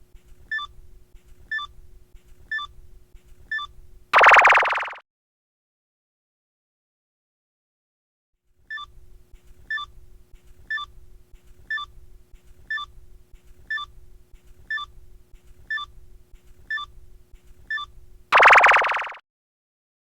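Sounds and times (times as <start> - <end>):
faint steady hum: 0.0 - 4.2, 8.6 - 19.1
short beeping ticks: 0.5 - 0.7, 1.5 - 1.7, 2.5 - 2.7, 3.5 - 5.0, 8.7 - 8.9, 9.7 - 9.9, 10.6 - 10.9, 11.6 - 11.9, 12.6 - 12.9, 13.6 - 13.9, 14.6 - 14.9, 15.6 - 15.9, 16.6 - 16.9, 17.6 - 19.2.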